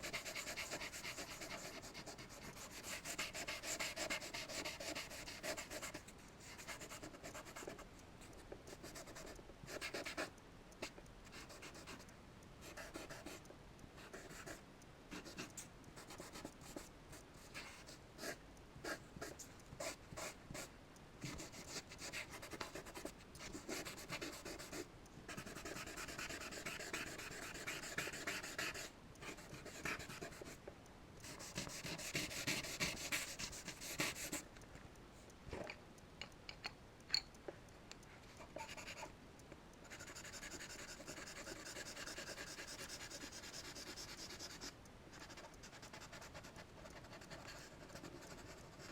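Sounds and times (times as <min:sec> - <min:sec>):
charcoal scratching on paper: 0:00.0 - 0:07.7, 0:17.5 - 0:30.6, 0:31.2 - 0:34.4, 0:39.9 - 0:48.9.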